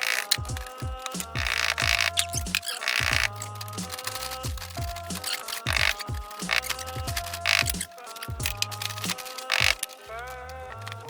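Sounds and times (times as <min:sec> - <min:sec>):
electronic music with beat: 0:00.0 - 0:10.0.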